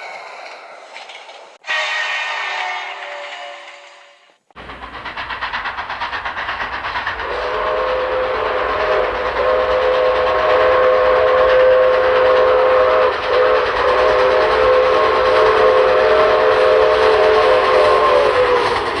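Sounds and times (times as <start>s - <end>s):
train running rhythmically: 0.0s - 19.0s
multi-note train whistle: 1.6s - 4.4s, 7.2s - 19.0s.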